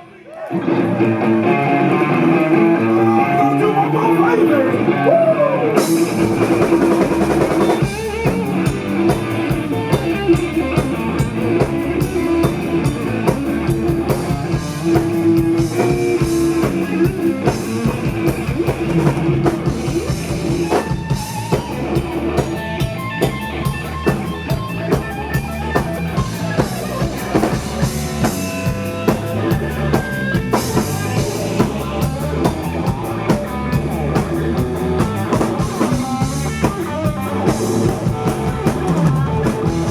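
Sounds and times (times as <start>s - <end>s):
electric guitar: 0.0s - 39.9s
drum kit beat: 5.8s - 39.9s.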